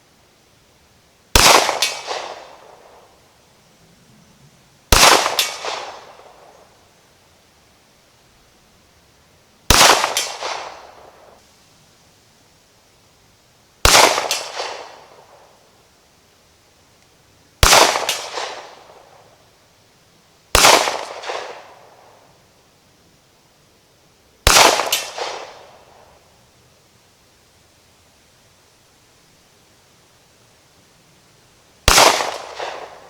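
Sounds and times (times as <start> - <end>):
pistol shots with echo: 4.9 - 6.1, 9.7 - 11.1, 13.9 - 15.0, 17.6 - 18.8, 20.6 - 21.7, 24.5 - 25.6, 31.9 - 33.0.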